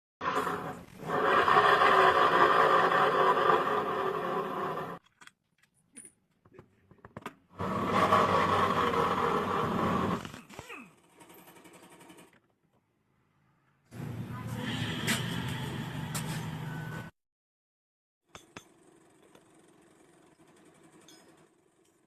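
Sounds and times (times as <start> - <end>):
rough rattling scooter engine: 0.2 - 5.0, 7.6 - 10.2, 11.1 - 12.3, 18.7 - 21.8.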